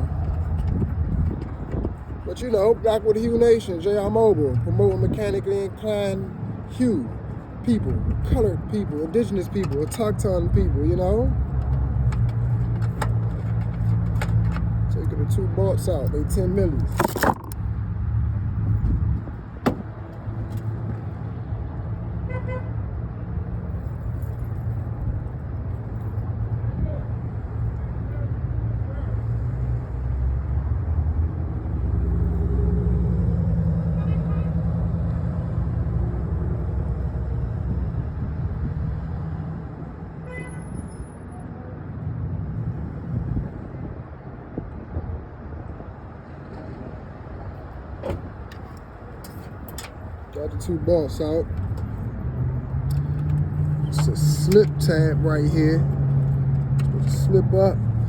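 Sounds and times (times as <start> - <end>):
car engine humming: 0.0 - 21.1, 48.0 - 58.0
low vehicle rumble: 0.0 - 22.1.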